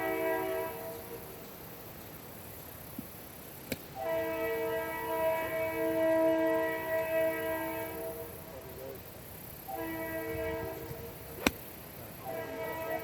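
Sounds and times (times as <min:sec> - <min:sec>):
golf club striking ball: 0:03.6 - 0:03.9, 0:11.4 - 0:11.8.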